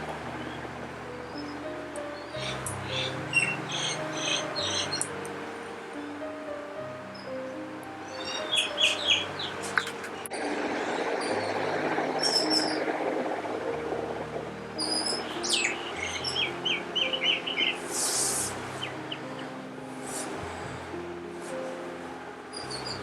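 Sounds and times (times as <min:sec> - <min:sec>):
soft background music: 0:00.0 - 0:23.0
parrot chirping: 0:00.4 - 0:06.2, 0:07.9 - 0:12.9, 0:14.8 - 0:19.4.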